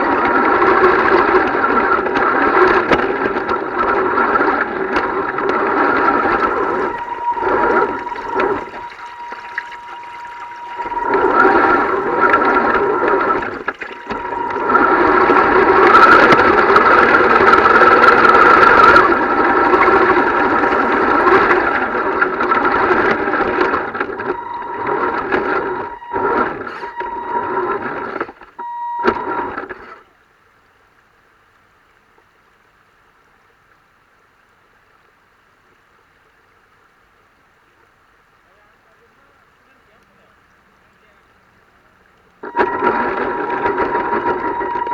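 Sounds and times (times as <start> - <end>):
faint hum: 0.1 - 29.8, 38.5 - 44.9
rushing water: 1.2 - 27.8
steady high whine: 2.1 - 29.7, 42.4 - 44.9.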